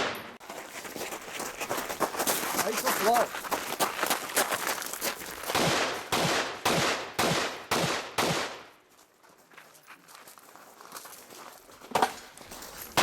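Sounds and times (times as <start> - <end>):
rifle shots with echo: 5.5 - 8.7.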